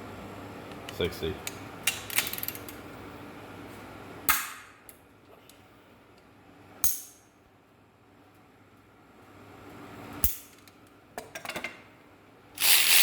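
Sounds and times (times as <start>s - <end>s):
ratchet clicking: 12.6s - 13.0s.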